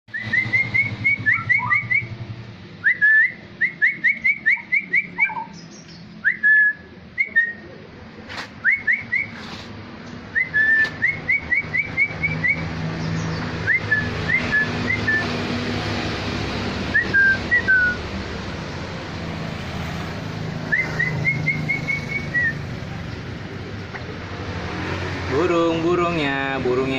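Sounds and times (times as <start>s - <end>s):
bird singing whistled notes: 0.1s - 2.2s, 2.8s - 7.6s, 8.6s - 9.4s, 10.3s - 15.3s, 16.9s - 18.0s, 20.7s - 22.6s.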